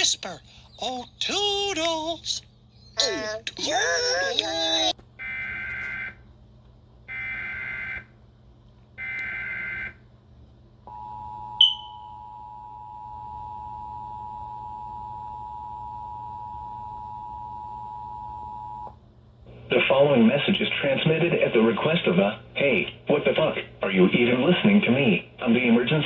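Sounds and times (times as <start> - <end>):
two-tone attention signal: 10.9 - 18.8.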